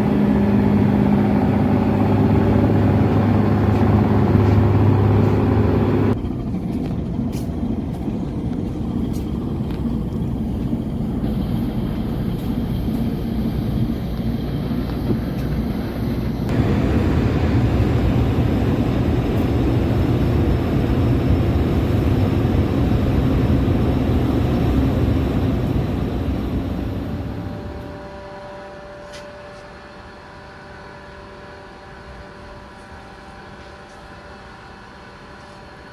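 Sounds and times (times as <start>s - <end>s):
ship engine running: 0.0s - 28.6s
broad rumble and hiss: 0.0s - 28.8s.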